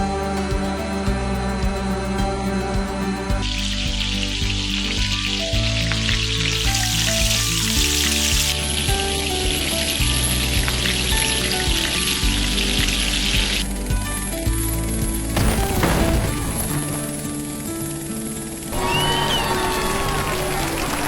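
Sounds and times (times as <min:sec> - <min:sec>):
background music: 0:00.0 - 0:21.0
hot oil sizzling: 0:04.8 - 0:12.7.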